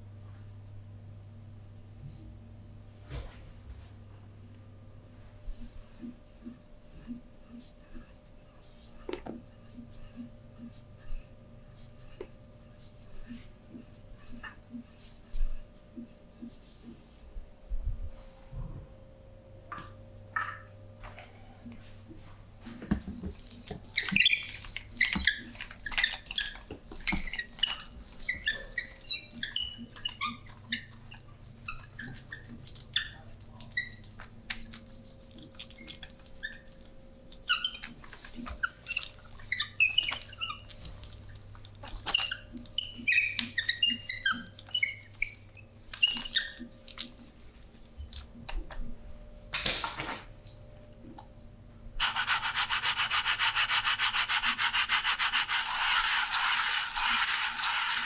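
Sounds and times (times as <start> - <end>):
faint steady hum: 0.0 - 58.0
hands squeaking on skin: 23.4 - 47.3, 52.0 - 58.0.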